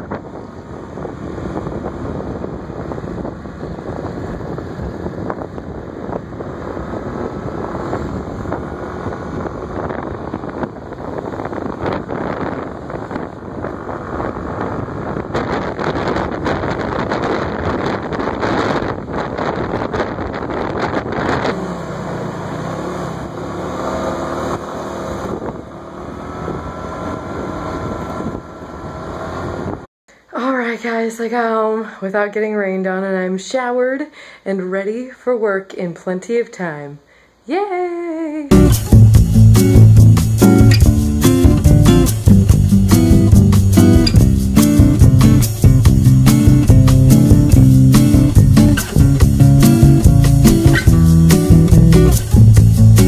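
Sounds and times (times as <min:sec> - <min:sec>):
wind rushing over microphone: 0:00.0 - 0:29.9, 0:38.5 - 0:53.0
scooter engine running: 0:23.2 - 0:29.8, 0:38.5 - 0:53.0.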